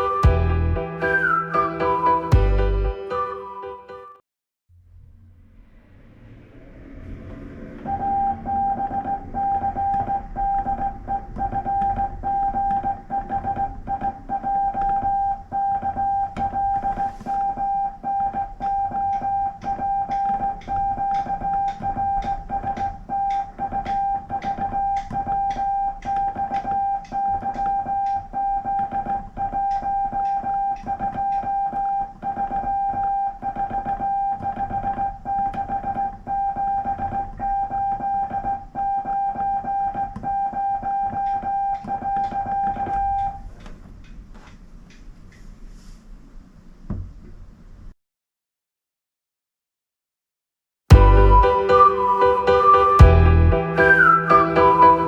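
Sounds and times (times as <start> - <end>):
morse code beeping: 7.9 - 43.4
telegraph key clicks: 9.8 - 45.0.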